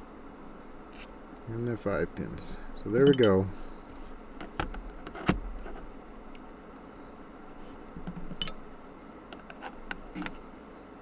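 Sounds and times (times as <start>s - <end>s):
small metal clicks and clinks: 2.9s - 3.5s, 8.4s - 8.7s.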